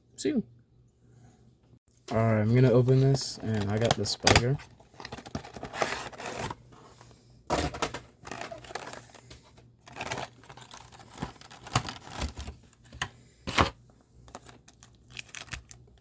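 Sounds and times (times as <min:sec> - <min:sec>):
packaging crinkling and tearing: 0:08.2 - 0:12.6, 0:14.3 - 0:16.0.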